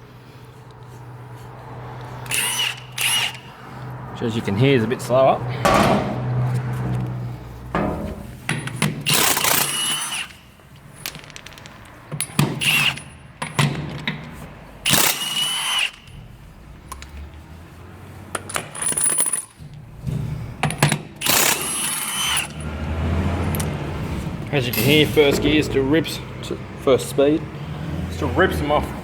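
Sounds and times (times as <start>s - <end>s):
impact wrench rattling: 7.7s - 16.3s, 20.6s - 22.7s, 24.6s - 25.2s.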